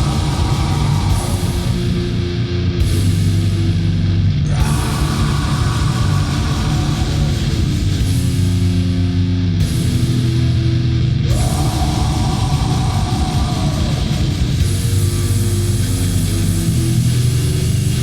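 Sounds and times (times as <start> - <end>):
drum kit playing: 0.0 - 3.6, 11.3 - 16.7
distorted guitars: 0.0 - 18.0.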